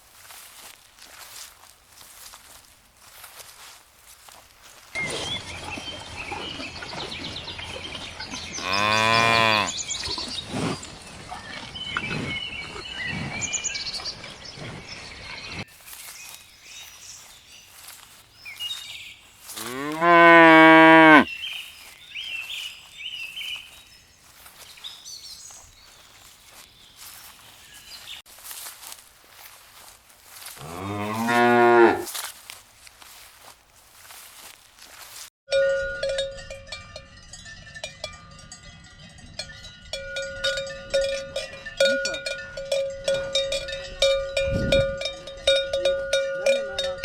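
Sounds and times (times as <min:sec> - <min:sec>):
cows mooing: 0:08.6 - 0:09.8, 0:19.6 - 0:21.3, 0:30.6 - 0:32.1.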